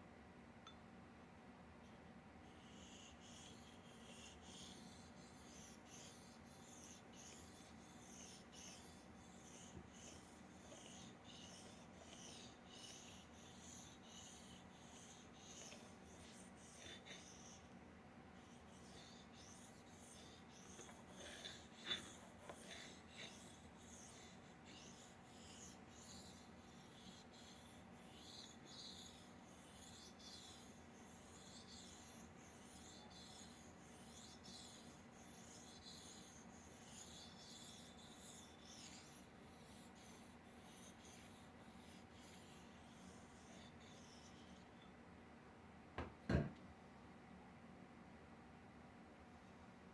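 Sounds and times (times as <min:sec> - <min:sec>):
razor scraping on sharpening stone: 0:02.6 - 0:17.7, 0:18.4 - 0:44.6.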